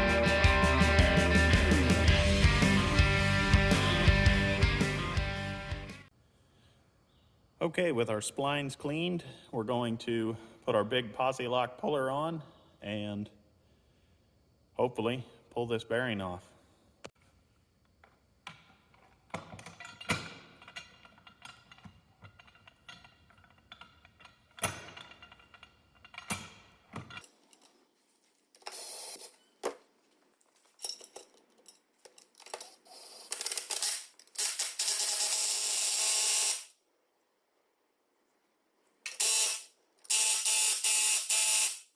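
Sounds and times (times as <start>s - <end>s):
metal clinks and taps: 30.7s - 32.6s.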